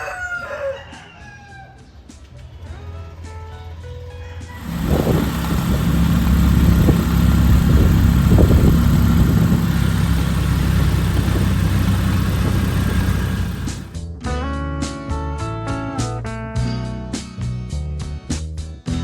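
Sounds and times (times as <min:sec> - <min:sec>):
vehicle engine running loudly: 0:04.6 - 0:14.0.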